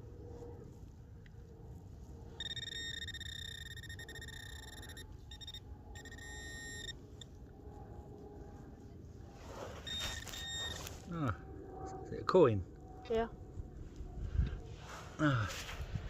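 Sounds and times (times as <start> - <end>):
metal detector buzzing beep: 2.4 - 7.0, 9.8 - 10.9.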